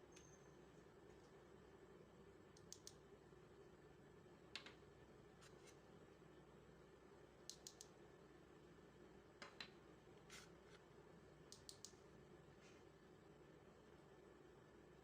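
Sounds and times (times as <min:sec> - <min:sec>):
faint sharp clicks: 0:02.6 - 0:03.0, 0:07.5 - 0:08.0, 0:11.5 - 0:12.0.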